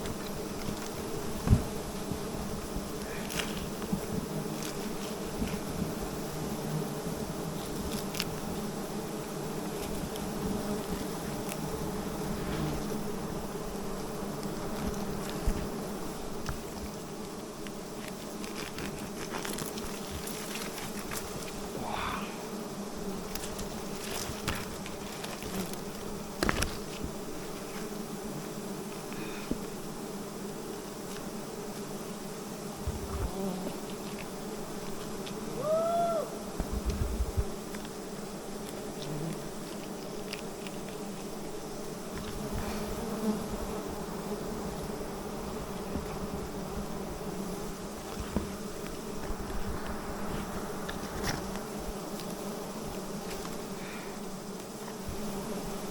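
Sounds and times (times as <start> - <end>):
bees buzzing: 0.0 - 35.6, 36.2 - 55.9.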